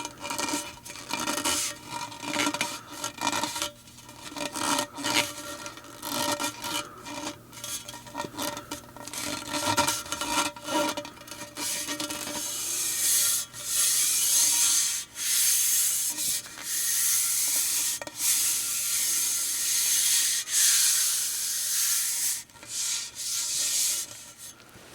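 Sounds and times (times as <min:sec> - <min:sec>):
rasping rubbing strokes: 0:11.6 - 0:24.6.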